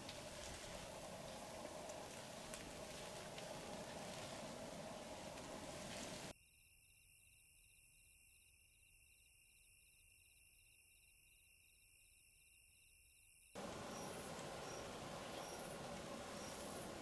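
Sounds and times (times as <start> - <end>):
steady noisy hiss: 0.0 - 6.3, 13.6 - 17.0
faint insect chirping: 0.0 - 17.0.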